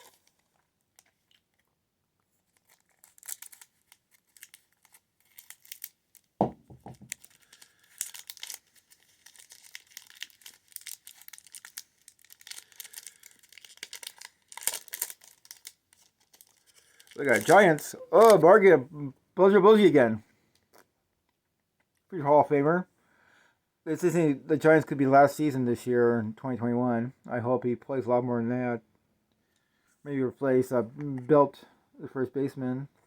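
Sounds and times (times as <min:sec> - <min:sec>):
plastic wrapper crinkling and tearing: 0:00.0 - 0:18.7.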